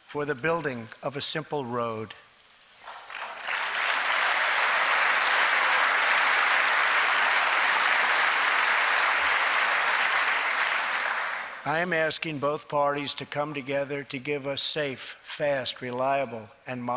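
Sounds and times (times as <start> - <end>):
audience applauding: 2.8 - 11.7.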